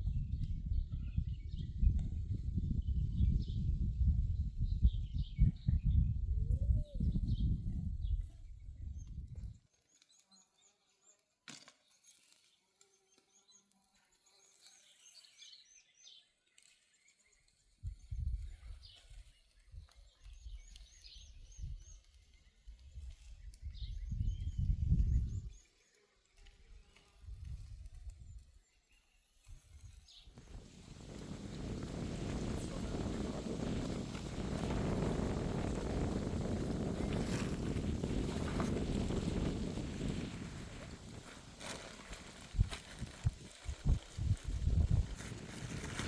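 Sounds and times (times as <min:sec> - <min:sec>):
low rumbling wind on microphone: 0:00.0 - 0:09.6, 0:17.8 - 0:19.0, 0:22.9 - 0:25.6, 0:30.4 - 0:46.0
small birds chirping: 0:00.0 - 0:46.0.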